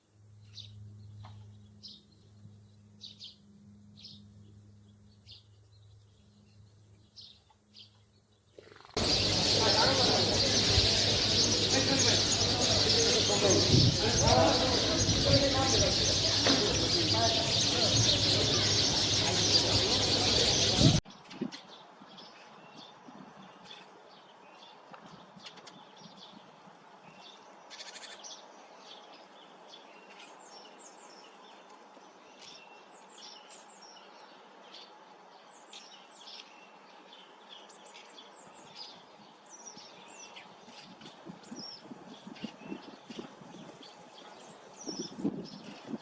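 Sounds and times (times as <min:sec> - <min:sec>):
sparrows chirping: 0:00.4 - 0:08.1, 0:09.0 - 0:21.0, 0:35.5 - 0:45.9
loud dense noise: 0:09.0 - 0:21.0.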